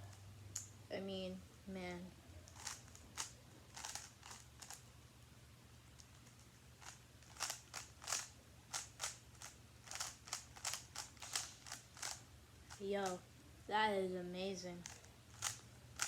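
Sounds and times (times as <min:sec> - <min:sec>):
puzzle cube layers clicking: 0:02.5 - 0:04.8, 0:06.0 - 0:13.2.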